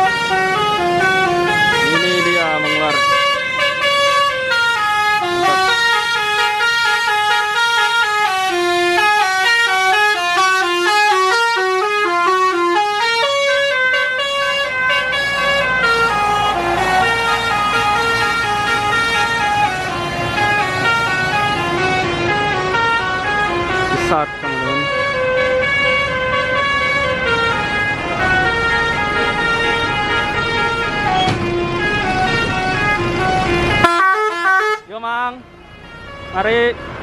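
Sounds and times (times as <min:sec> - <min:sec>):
multi-trumpet air horn melody: 0:00.0 - 0:21.6, 0:31.8 - 0:35.0.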